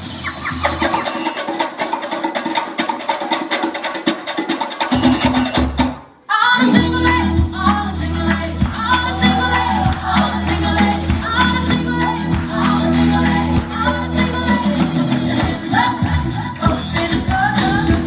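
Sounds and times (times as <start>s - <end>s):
upbeat latin dance music: 0.0s - 18.0s
woman singing: 6.3s - 18.0s.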